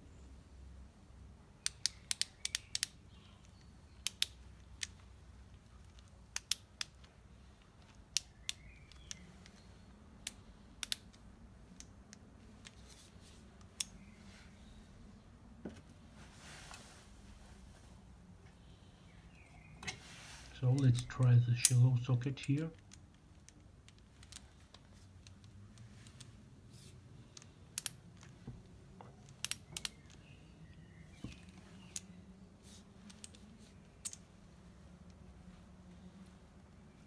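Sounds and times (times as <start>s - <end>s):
short rustle: 15.8s - 18.1s, 19.9s - 20.7s.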